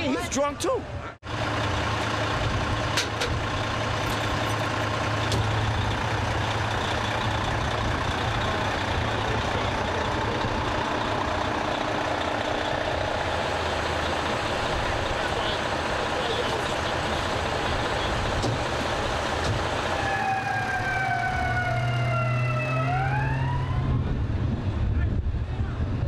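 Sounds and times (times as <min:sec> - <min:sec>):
road noise: 0:00.0 - 0:26.0
heavy vehicle engine idling: 0:01.2 - 0:20.8.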